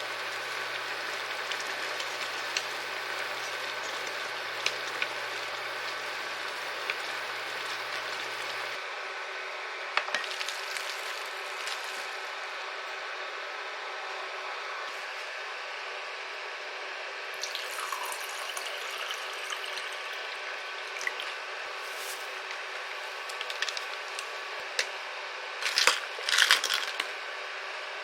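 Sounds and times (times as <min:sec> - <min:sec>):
water running from tap: 0:00.0 - 0:08.8, 0:17.4 - 0:21.4.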